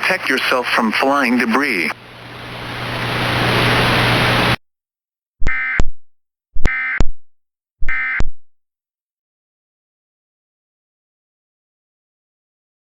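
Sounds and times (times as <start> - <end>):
hissing static: 0.0 - 4.6
low hum: 2.0 - 4.6.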